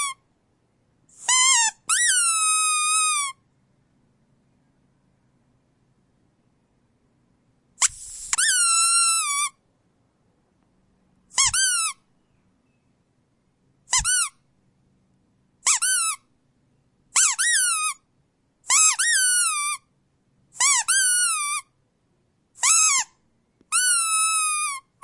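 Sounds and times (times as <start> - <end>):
rubber squeak toy squeaking: 0.0 - 0.2, 1.1 - 3.4, 7.8 - 9.6, 11.3 - 12.0, 13.9 - 14.4, 15.6 - 16.3, 17.1 - 19.9, 20.5 - 21.7, 22.6 - 25.0.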